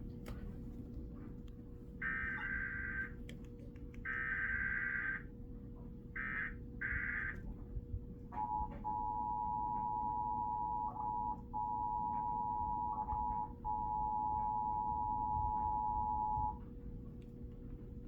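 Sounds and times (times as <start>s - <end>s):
faint steady hum: 0.0s - 18.0s
two-tone alarm signal: 8.4s - 16.6s.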